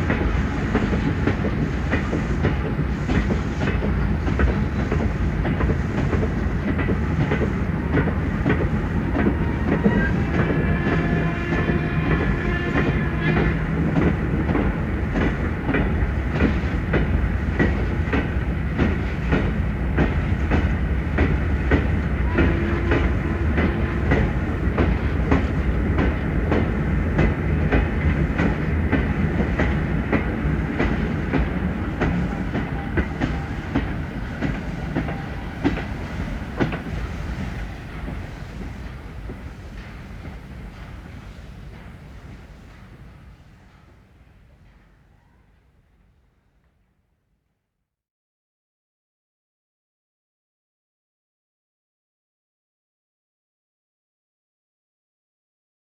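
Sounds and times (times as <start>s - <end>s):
train wheels clattering: 0.0s - 43.2s
train low rumble: 0.0s - 47.2s.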